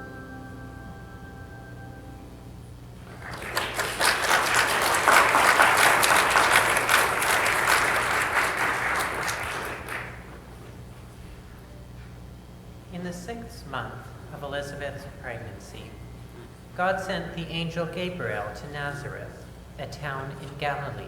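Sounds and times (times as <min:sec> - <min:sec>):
audience applauding: 0:03.0 - 0:10.7.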